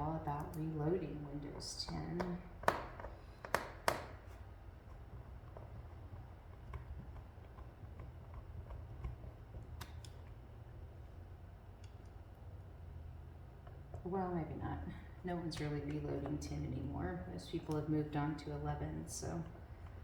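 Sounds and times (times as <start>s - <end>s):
low steady hum: 0.0s - 20.0s
laptop clicks and taps: 2.2s - 4.3s.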